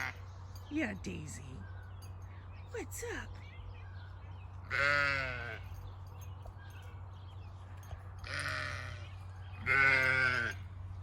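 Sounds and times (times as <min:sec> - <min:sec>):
sheep bleating: 0:04.6 - 0:05.7, 0:08.2 - 0:10.6.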